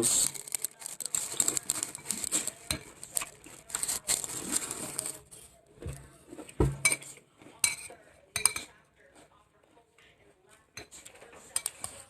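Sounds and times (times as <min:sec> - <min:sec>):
crunchy chewing of cereal: 0:00.0 - 0:12.0.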